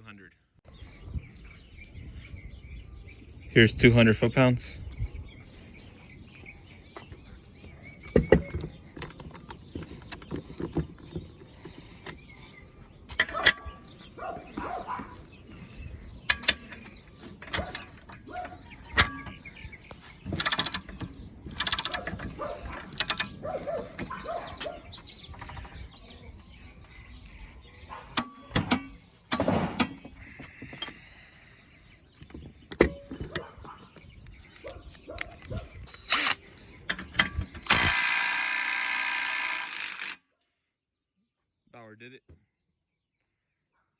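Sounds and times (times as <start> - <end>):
tools knocking and clicking: 8.0 - 12.2, 16.3 - 24.4, 28.2 - 30.0, 32.2 - 40.2
short rattling bursts: 20.1 - 23.6, 37.3 - 40.2.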